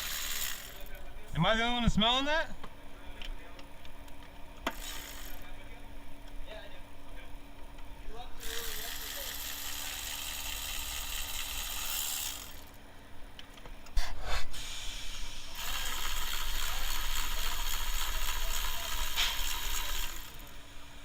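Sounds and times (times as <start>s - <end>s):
ratchet wrench clicking: 0.0s - 1.0s, 4.7s - 5.5s, 8.4s - 12.8s, 15.6s - 20.5s.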